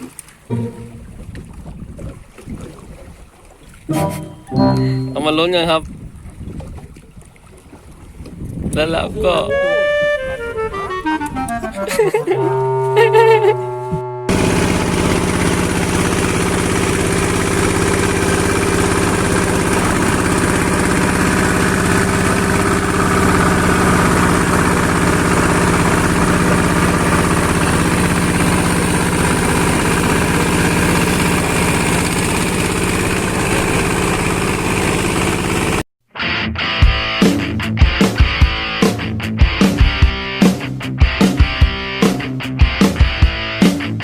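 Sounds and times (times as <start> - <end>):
boat engine droning: 0.5 - 1.9, 3.9 - 5.8, 9.0 - 35.8.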